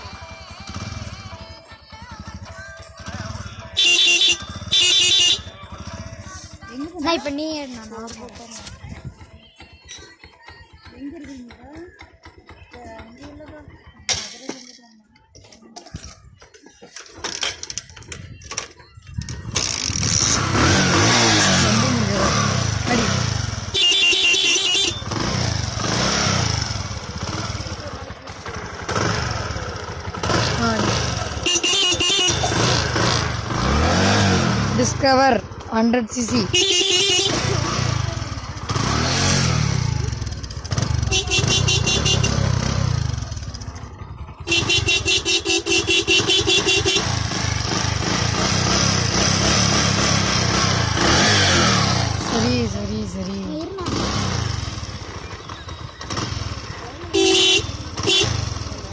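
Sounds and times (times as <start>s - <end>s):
motorcycle engine idling: 0.0s - 58.9s
motorcycle horn pulsing: 3.0s - 6.1s, 20.5s - 34.4s, 36.3s - 52.6s, 53.8s - 58.9s.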